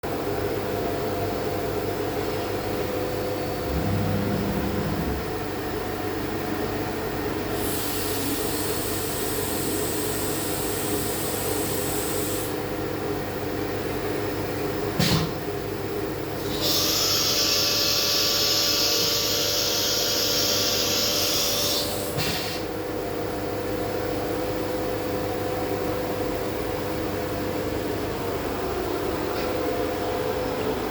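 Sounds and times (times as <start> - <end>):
machine humming: 3.3 - 6.4.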